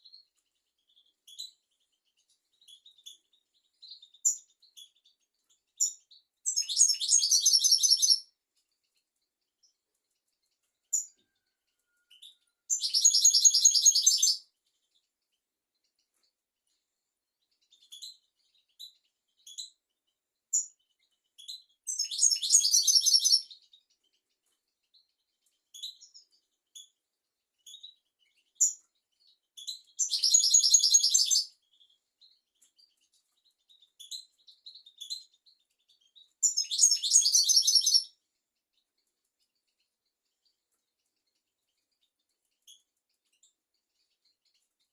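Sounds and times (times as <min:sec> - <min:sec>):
bird chirps: 0:00.0 - 0:44.9.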